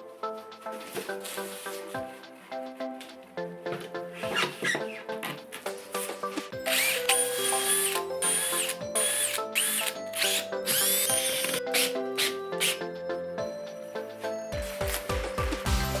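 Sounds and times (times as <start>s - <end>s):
background music: 0.0s - 16.0s
power drill whining: 6.6s - 12.8s.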